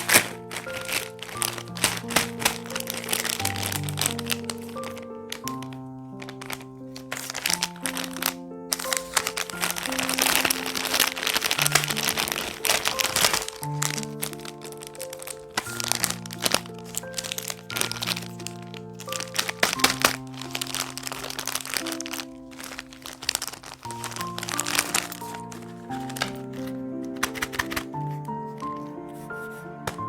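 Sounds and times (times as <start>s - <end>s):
background music with held notes: 0.0s - 30.0s
wrappers crinkling: 0.0s - 30.0s.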